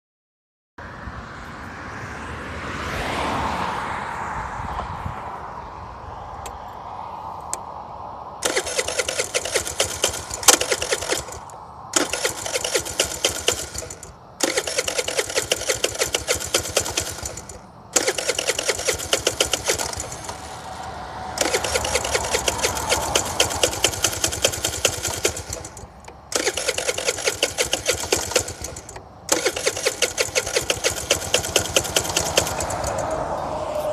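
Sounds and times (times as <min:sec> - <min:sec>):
scooter starter cranking engine: 0:08.4 - 0:33.4.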